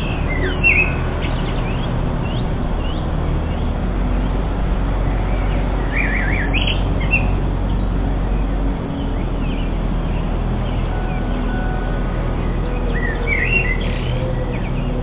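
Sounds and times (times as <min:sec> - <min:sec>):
small birds chirping: 0:00.0 - 0:04.4, 0:05.1 - 0:11.7, 0:12.5 - 0:15.0.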